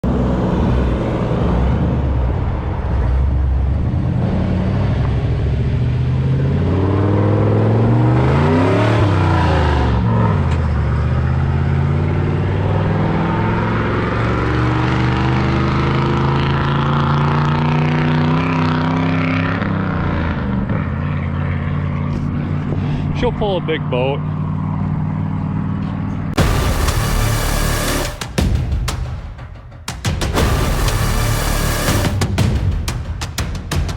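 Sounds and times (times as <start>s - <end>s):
truck engine running: 19.4s - 33.9s.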